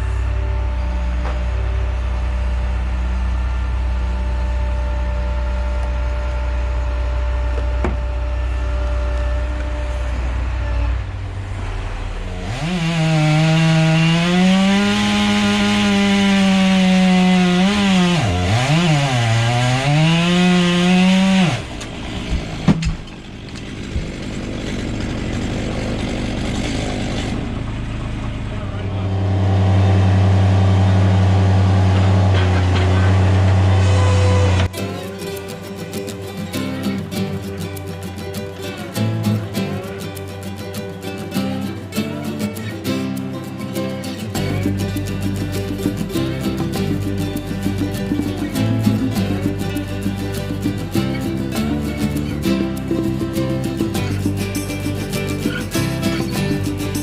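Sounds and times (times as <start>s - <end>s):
low engine drone: 0.0s - 16.5s, 21.4s - 57.0s
chainsaw cutting wood: 12.2s - 27.4s, 31.6s - 57.0s.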